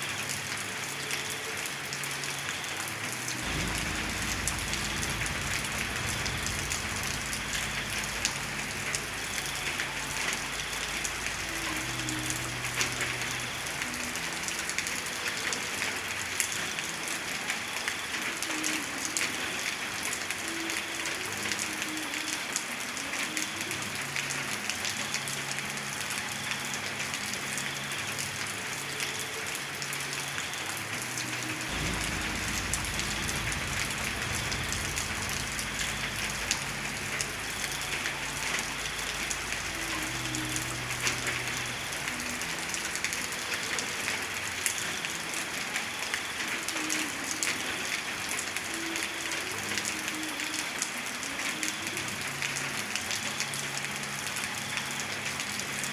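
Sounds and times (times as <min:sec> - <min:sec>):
steady rain falling: 0:00.0 - 0:55.9
low rumble: 0:03.4 - 0:09.4, 0:31.7 - 0:38.6.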